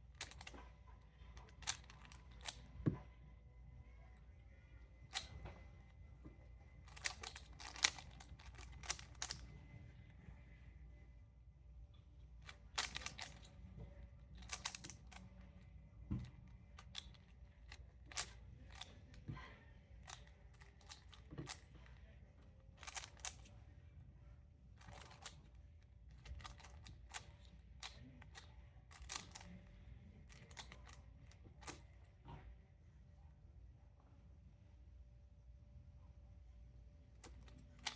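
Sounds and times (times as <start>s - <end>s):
plastic puzzle cube clicking: 0.2s - 0.6s, 1.4s - 2.7s, 5.1s - 5.3s, 6.9s - 9.4s, 12.4s - 13.5s, 14.4s - 15.2s, 16.8s - 19.0s, 20.0s - 21.7s, 22.8s - 23.5s, 24.8s - 25.4s, 26.1s - 29.6s, 30.3s - 31.9s, 37.2s - 37.9s.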